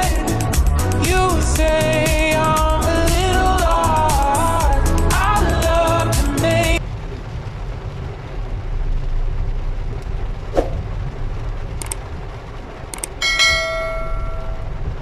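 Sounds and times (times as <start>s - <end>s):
vehicle engine rumbling: 0.0s - 15.0s
short clicks: 11.8s - 12.0s, 12.9s - 13.2s.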